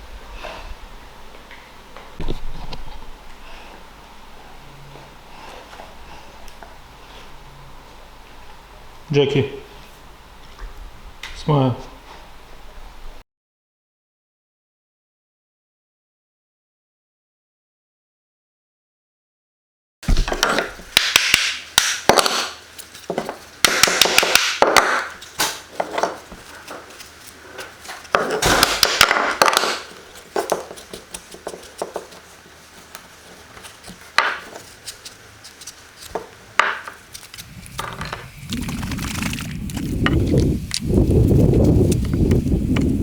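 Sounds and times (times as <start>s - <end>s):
scraping wood: 22.1s - 43.0s
hand tools knocking on wood: 23.1s - 25.1s, 28.1s - 30.8s.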